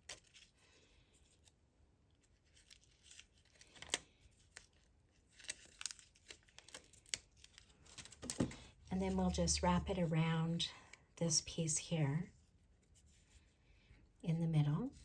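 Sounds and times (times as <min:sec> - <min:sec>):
soft crackling and peeling: 0:00.0 - 0:10.0.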